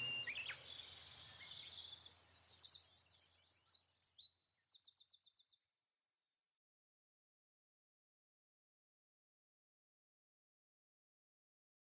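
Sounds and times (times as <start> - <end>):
songbirds chirping: 0.0 - 5.8.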